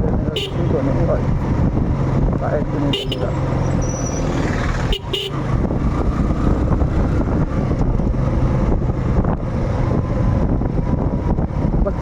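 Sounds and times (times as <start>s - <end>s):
motorcycle riding: 0.0s - 12.0s
wind buffeting microphone: 0.0s - 12.0s.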